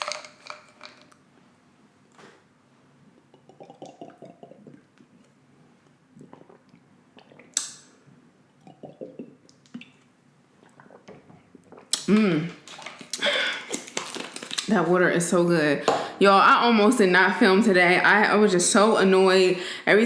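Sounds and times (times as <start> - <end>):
person gulping water: 3.0 - 14.7.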